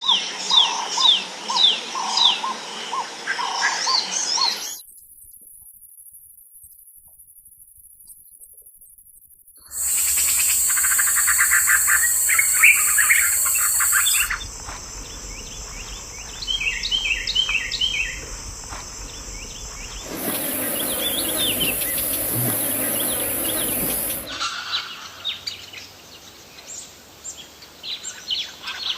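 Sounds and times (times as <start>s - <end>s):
high insect drone: 4.8s - 24.5s.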